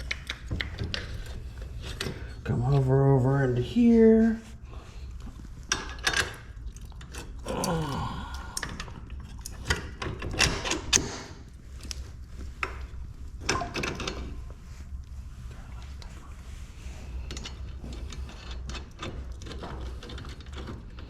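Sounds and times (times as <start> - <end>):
metal clicks and knocks: 0.0 - 2.3, 8.6 - 11.4.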